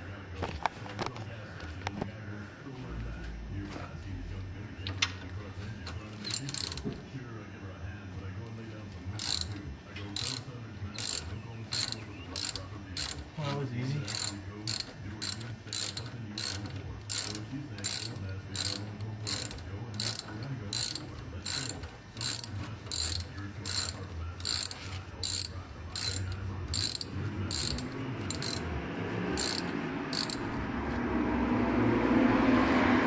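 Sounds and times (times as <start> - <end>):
hand ratchet clicking: 6.2 - 6.8, 9.2 - 9.6, 10.2 - 13.2, 14.0 - 28.7, 29.4 - 30.5.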